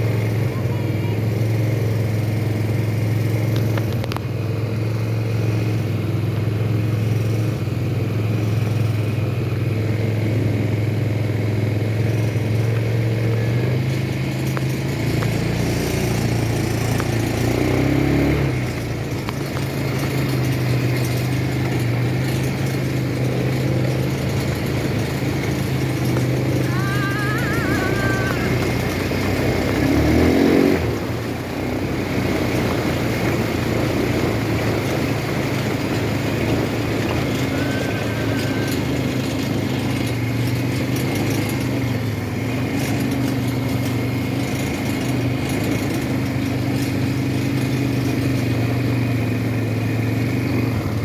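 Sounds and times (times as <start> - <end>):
atv engine running: 0.0 - 51.0.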